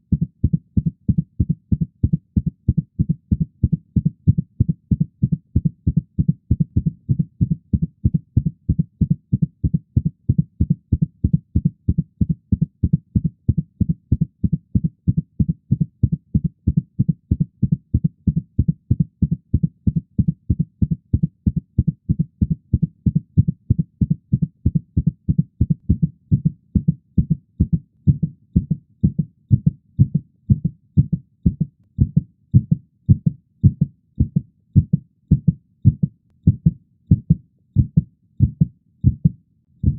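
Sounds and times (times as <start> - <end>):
heartbeat thumping: 0.1 - 39.9.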